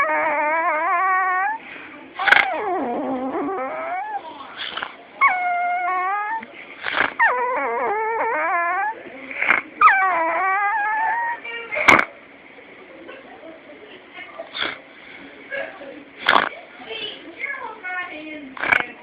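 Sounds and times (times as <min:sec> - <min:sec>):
dog whining howls: 0:00.0 - 0:01.6, 0:02.2 - 0:11.5.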